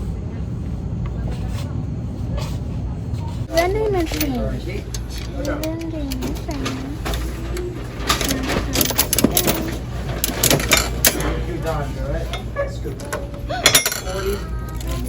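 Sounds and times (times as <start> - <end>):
coins clinking: 3.5 - 11.4, 12.4 - 15.0.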